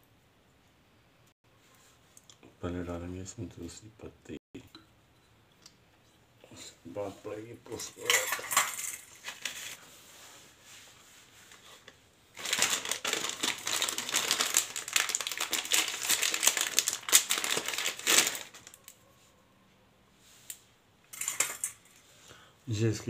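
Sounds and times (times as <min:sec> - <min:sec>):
engine parts handling noise: 0:07.7 - 0:09.8, 0:21.1 - 0:22.0.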